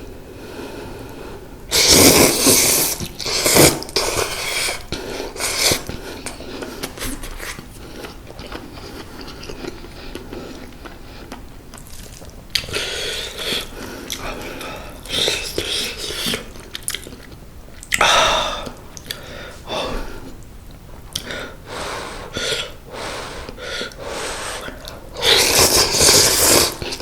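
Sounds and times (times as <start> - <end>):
person slurping noodles: 1.7 - 10.7, 11.9 - 17.0, 21.1 - 27.0
person chewing: 1.7 - 19.6, 20.2 - 21.6, 23.4 - 27.0.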